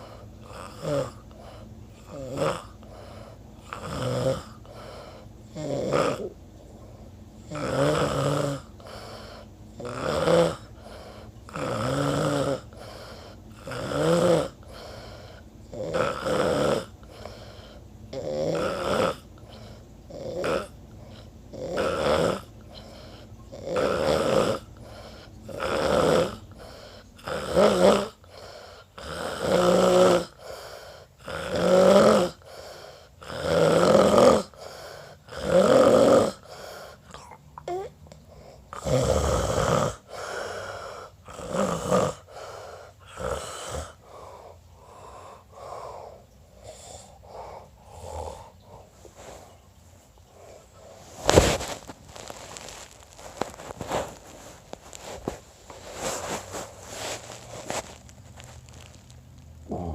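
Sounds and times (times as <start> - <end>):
man snoring: 0.0 - 6.3, 7.4 - 17.5, 18.1 - 30.6, 31.2 - 37.9, 38.7 - 46.1, 46.7 - 48.6, 59.6 - 59.9.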